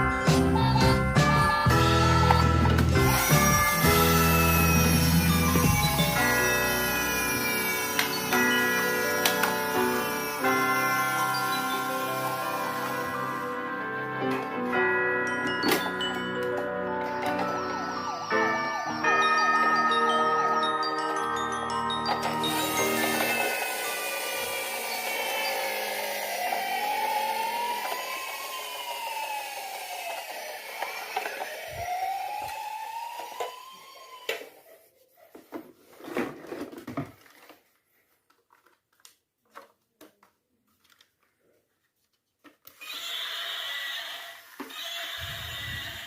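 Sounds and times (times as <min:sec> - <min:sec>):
electronic toy sound effect: 0:01.4 - 0:13.5, 0:16.5 - 0:34.6, 0:42.8 - 0:46.0
toy siren wailing: 0:03.1 - 0:13.4, 0:17.0 - 0:34.7, 0:42.8 - 0:46.0.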